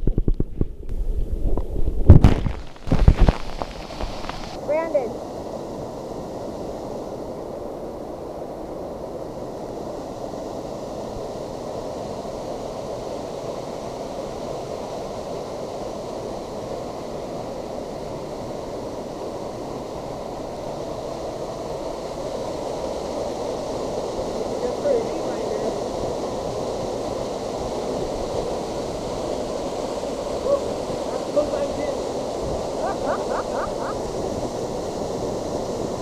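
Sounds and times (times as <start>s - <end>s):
waterfall roaring: 2.2s - 5.1s, 24.2s - 36.0s.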